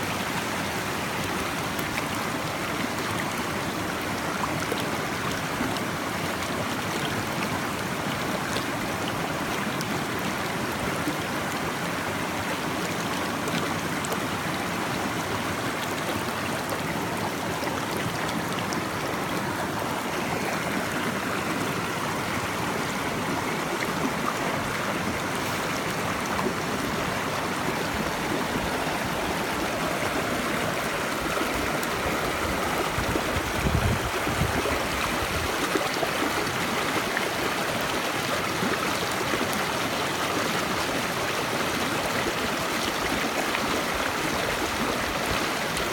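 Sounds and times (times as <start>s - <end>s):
running water rushing: 0.0s - 45.9s.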